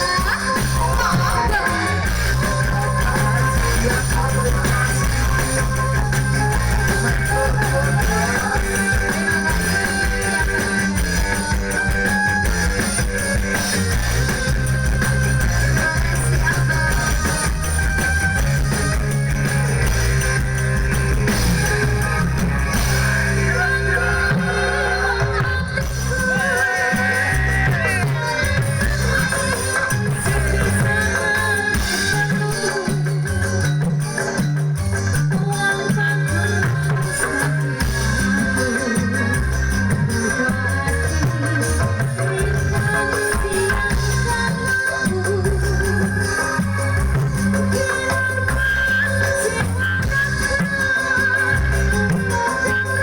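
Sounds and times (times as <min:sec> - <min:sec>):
bass: 0:00.0 - 0:53.0
drums: 0:00.0 - 0:53.0
guitar: 0:00.0 - 0:53.0
live band music: 0:00.0 - 0:53.0.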